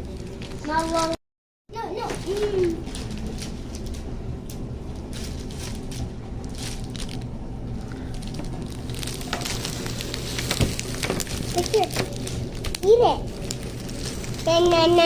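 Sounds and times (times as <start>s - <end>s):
low room hum: 0.0s - 15.0s.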